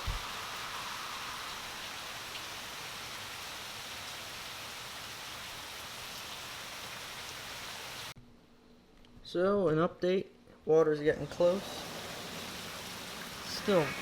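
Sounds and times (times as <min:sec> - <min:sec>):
heavy rain pouring: 0:00.0 - 0:08.1, 0:11.4 - 0:14.0.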